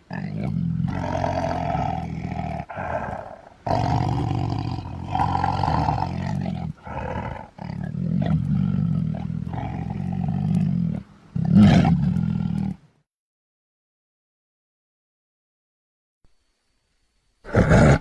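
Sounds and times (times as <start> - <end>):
deep rasping animal growls: 0.0 - 12.8, 17.5 - 18.0.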